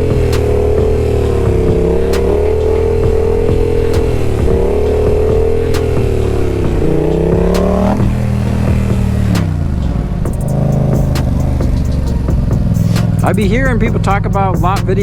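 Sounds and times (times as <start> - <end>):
motorcycle engine under throttle: 0.0 - 15.0.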